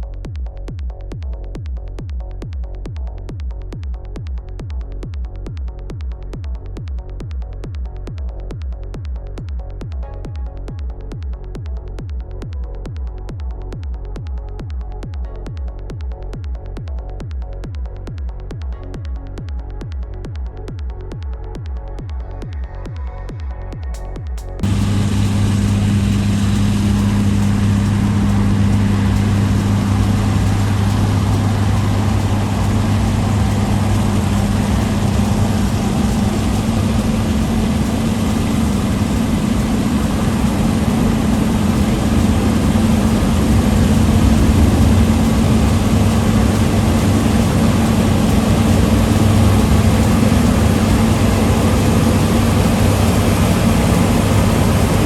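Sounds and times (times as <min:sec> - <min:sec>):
diesel engine running under load: 0:24.6 - 0:55.0.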